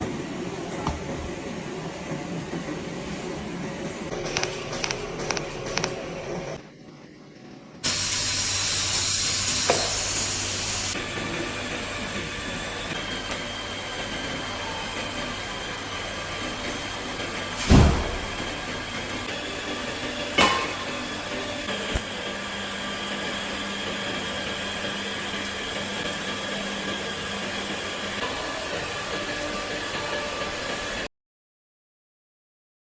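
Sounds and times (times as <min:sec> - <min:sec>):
welding machine hiss and hum: 0:03.8 - 0:06.6, 0:07.8 - 0:31.1.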